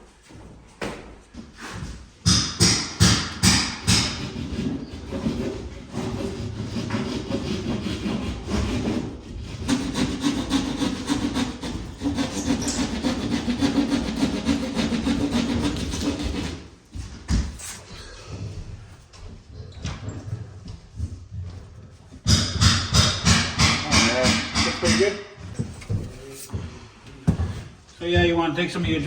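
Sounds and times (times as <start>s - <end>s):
saw rasping through drywall: 1.6s - 17.9s, 22.2s - 25.2s.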